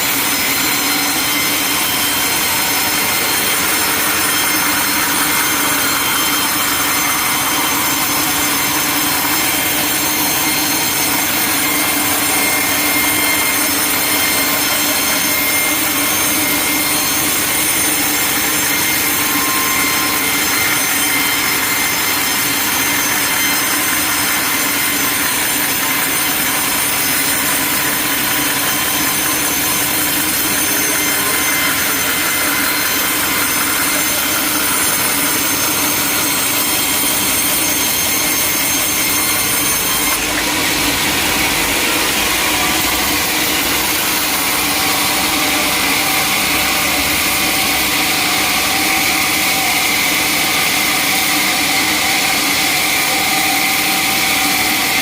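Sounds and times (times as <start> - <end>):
sawmill saw cutting log: 0.0 - 55.0.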